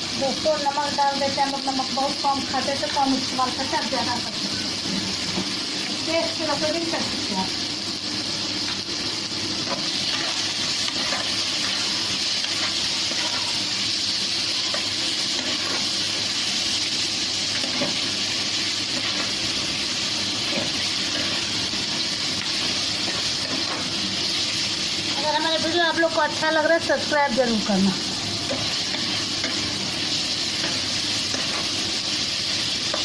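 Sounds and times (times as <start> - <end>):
onion and tomato sizzling in oil: 0.0 - 33.0.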